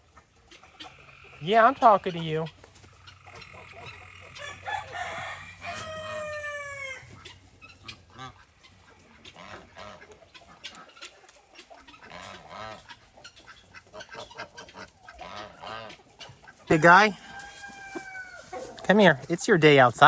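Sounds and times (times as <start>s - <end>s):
chickens clucking: 0.0s - 20.0s
rooster crowing: 3.8s - 7.2s, 16.7s - 18.8s.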